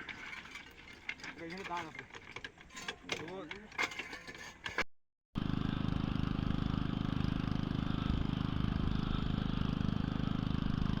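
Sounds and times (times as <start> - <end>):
small engine running: 5.4 - 11.0.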